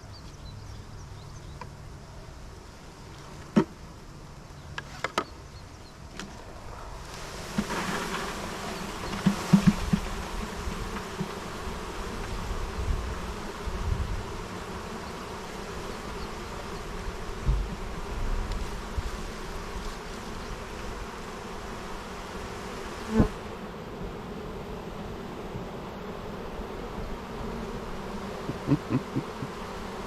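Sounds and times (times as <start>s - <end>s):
honeybees buzzing: 6.8s - 30.0s.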